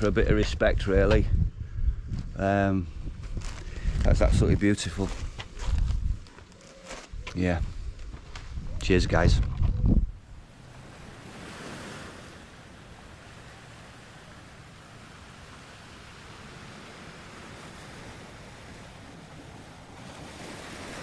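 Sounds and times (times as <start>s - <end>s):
surf washing onto beach: 10.2s - 21.0s.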